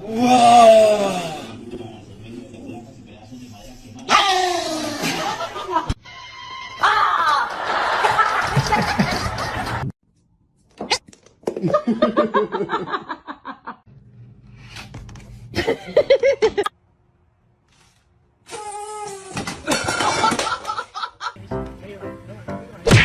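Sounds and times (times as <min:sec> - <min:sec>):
people laughing: 0:04.9 - 0:06.0, 0:07.2 - 0:09.9, 0:11.6 - 0:13.8, 0:15.6 - 0:16.7, 0:19.6 - 0:21.4.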